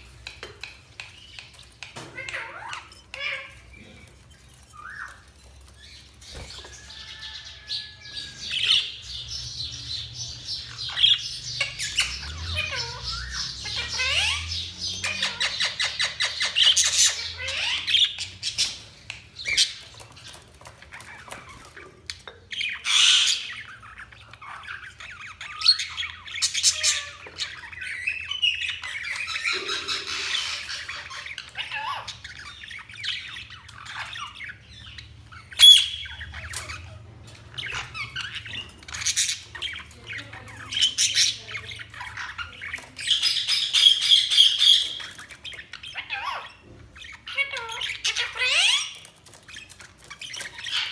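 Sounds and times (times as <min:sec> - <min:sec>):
budgerigars chattering: 0:00.0 - 0:50.9.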